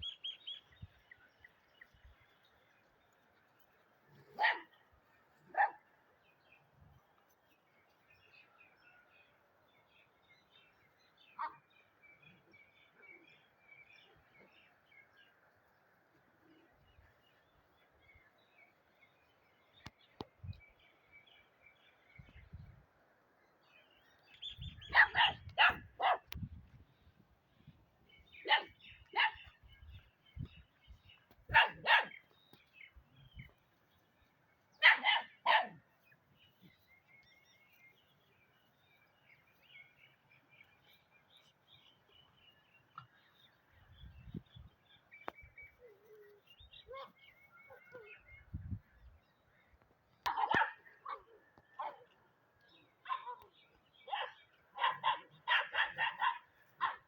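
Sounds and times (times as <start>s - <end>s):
birds chirping: 0.0s - 57.0s
dog barking: 4.3s - 4.7s, 5.5s - 5.9s, 24.9s - 26.4s, 28.4s - 29.5s, 31.5s - 32.2s, 34.8s - 35.8s, 50.3s - 52.1s, 54.1s - 57.0s.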